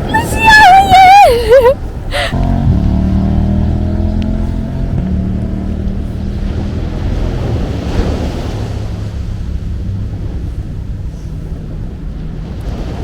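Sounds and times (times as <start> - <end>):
wind buffeting microphone: 1.8 - 13.0
ocean surf washing in: 6.3 - 13.0.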